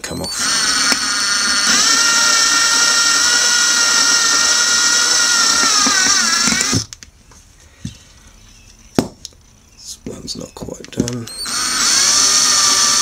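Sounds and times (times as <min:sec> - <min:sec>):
small power drill running: 0:00.0 - 0:06.9, 0:11.2 - 0:13.0.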